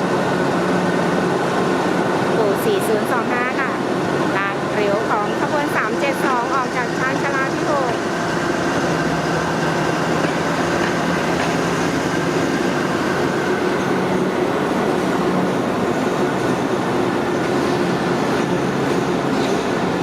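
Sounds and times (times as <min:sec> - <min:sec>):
train engine hum: 0:00.0 - 0:20.0
train wheels rumbling on track: 0:00.0 - 0:20.0.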